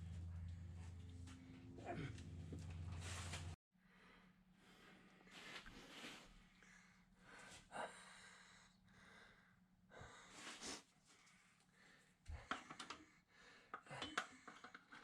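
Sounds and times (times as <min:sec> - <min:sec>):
person breathing heavily: 0:03.8 - 0:14.4
small clicks and taps: 0:12.3 - 0:13.1.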